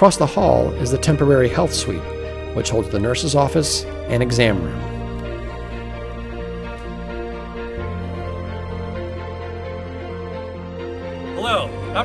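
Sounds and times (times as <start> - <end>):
soft music with low bass: 0.0 - 9.2.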